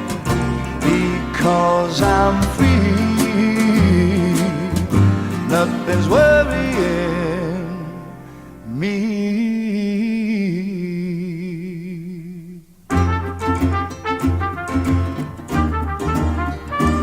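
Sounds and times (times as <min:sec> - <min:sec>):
pop band with brass: 0:00.0 - 0:07.0, 0:12.9 - 0:17.0.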